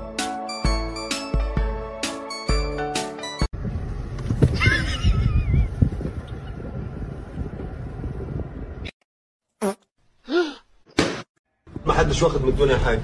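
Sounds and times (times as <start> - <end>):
wind buffeting microphone: 3.6 - 8.9.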